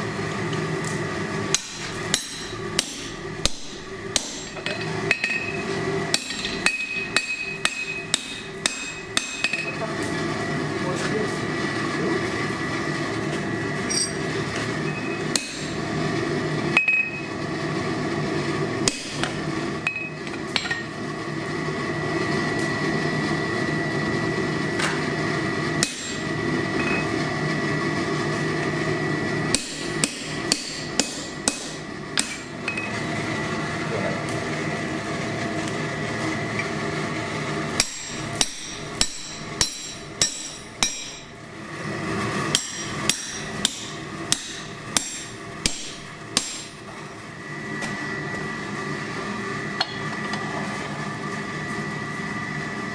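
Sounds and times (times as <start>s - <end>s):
hammer striking steel on anvil: 1.5s - 9.8s, 13.9s - 14.3s, 15.3s - 15.8s, 18.8s - 19.3s, 25.8s - 27.0s, 29.5s - 32.9s, 37.8s - 41.4s, 42.5s - 46.9s, 49.8s - 50.1s
steady hum: 22.9s - 52.9s.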